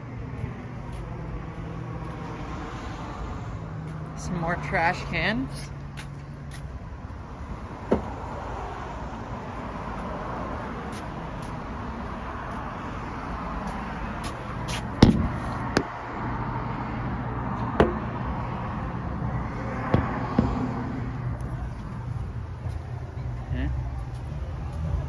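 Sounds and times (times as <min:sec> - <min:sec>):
outdoor rumble with low hum: 0:00.0 - 0:25.0
sharp knocks: 0:07.9 - 0:08.2.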